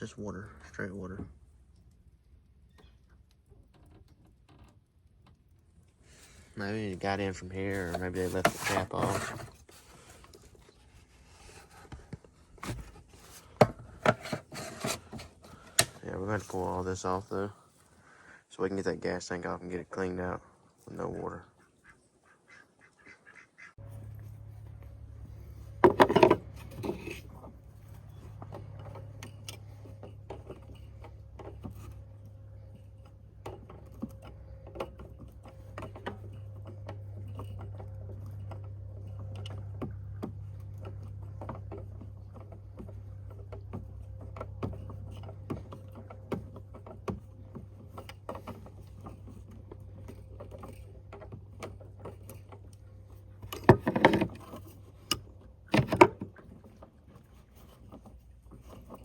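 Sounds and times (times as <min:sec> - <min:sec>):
steady low hum: 0:23.7 - 0:59.0
tools clattering: 0:25.7 - 0:39.7, 0:40.8 - 0:59.0.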